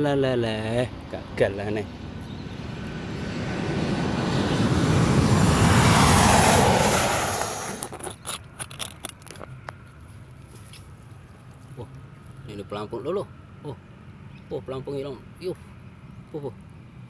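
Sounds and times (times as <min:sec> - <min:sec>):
vehicle passing by: 0:00.6 - 0:08.0.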